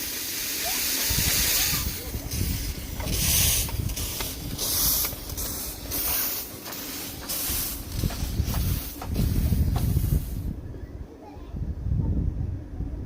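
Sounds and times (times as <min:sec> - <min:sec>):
steam hissing from locomotive: 0:00.0 - 0:10.6
low rumble: 0:01.1 - 0:10.8.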